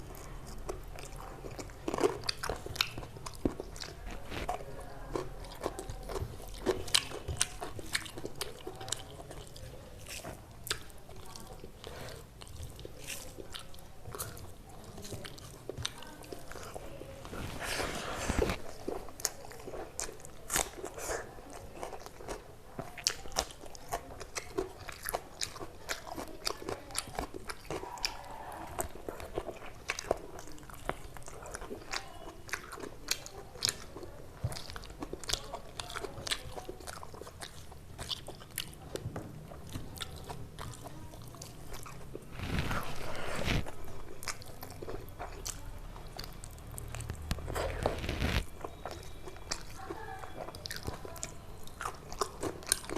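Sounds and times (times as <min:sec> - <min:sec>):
person chewing crunchy food: 0:00.0 - 0:52.9
wet mouth sounds: 0:23.0 - 0:52.9.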